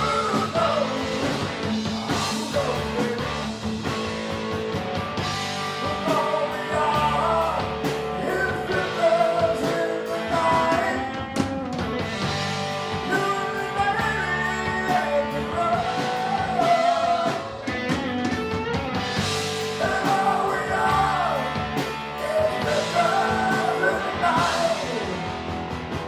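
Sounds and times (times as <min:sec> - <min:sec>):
person singing: 0:00.0 - 0:01.3, 0:01.9 - 0:03.5, 0:05.8 - 0:11.3, 0:13.0 - 0:17.7, 0:19.7 - 0:25.2
live rock band playing: 0:00.0 - 0:26.0.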